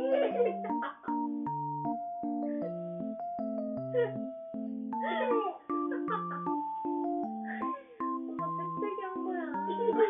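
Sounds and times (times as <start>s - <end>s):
electric piano melody: 0.0s - 10.0s.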